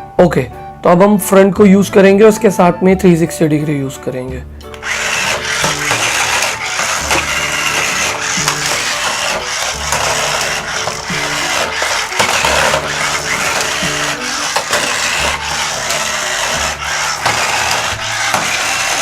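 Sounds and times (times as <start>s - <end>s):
plastic wheels rolling on floor: 4.8s - 19.0s
small electric motor whirring: 4.8s - 19.0s.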